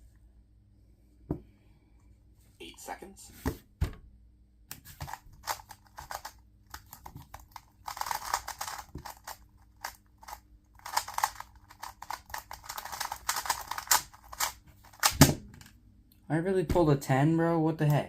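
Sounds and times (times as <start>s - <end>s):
plastic cube clicking: 5.4s - 15.2s.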